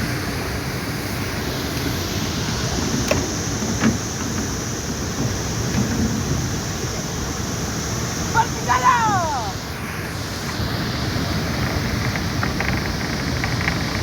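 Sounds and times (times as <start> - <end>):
water rushing: 0.0 - 14.0
wind: 0.0 - 14.0.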